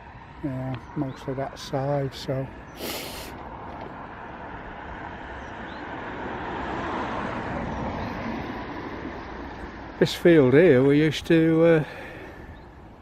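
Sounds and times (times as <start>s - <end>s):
car passing on road: 0.0s - 13.0s.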